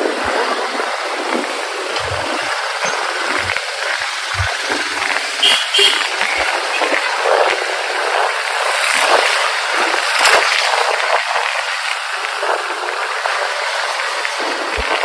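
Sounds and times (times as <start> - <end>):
wind noise on microphone: 0.0 - 15.0
knocks: 1.4 - 6.0.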